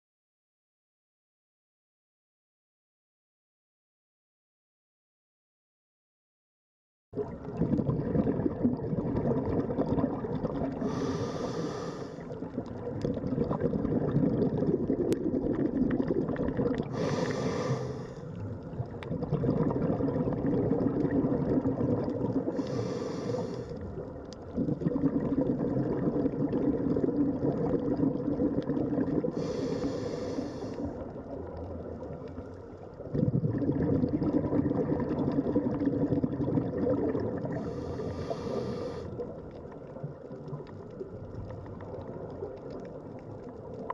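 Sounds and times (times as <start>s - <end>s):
bubbling of exhaled air: 7.2s - 43.9s
regulator inhalation hiss: 10.8s - 12.3s, 16.9s - 18.4s, 22.6s - 23.8s, 29.4s - 30.9s, 37.6s - 39.2s.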